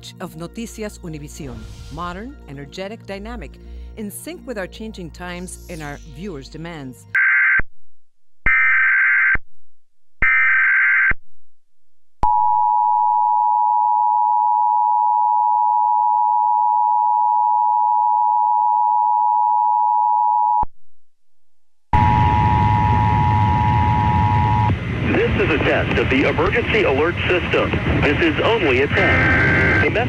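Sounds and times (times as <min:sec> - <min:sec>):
person speaking: 0:00.0 - 0:07.1
two-tone attention signal: 0:22.0 - 0:24.7, 0:28.9 - 0:29.9.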